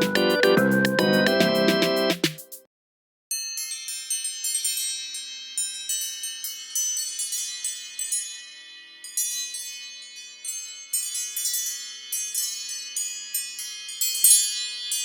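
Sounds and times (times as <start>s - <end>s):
bell-like ringtone melody: 0.0s - 2.2s, 13.7s - 15.0s.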